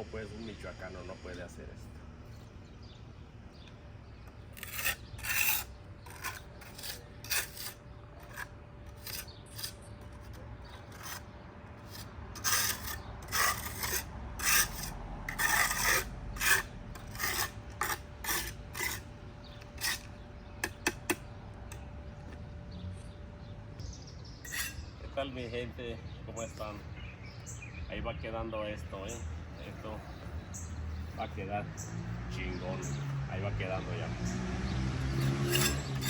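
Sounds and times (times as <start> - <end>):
trowel scraping mortar on brick: 4.3 - 21.8, 24.5 - 24.9, 35.0 - 36.0.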